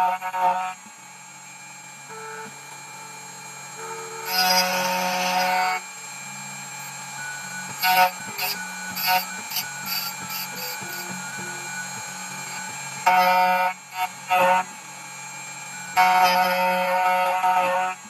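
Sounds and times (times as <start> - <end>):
key cutting machine milling: 0.0 - 18.0
machine motor hum: 0.0 - 18.0.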